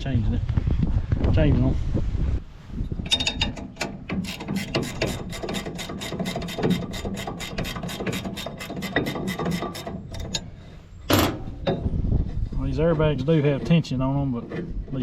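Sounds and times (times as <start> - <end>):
ratchet wrench clicking rapidly: 4.2 - 10.2.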